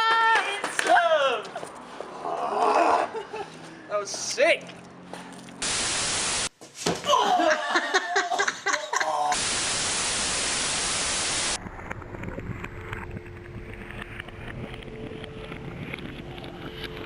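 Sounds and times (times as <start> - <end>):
burst of white noise: 5.6 - 6.5, 9.4 - 11.6.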